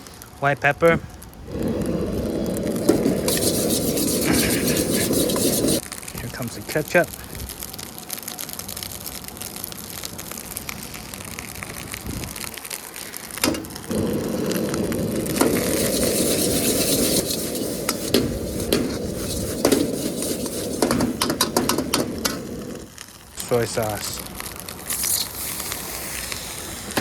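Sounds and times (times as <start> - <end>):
rice sizzling in a wok: 1.2 - 27.0
spatula scraping a wok: 1.6 - 5.8, 13.9 - 22.8.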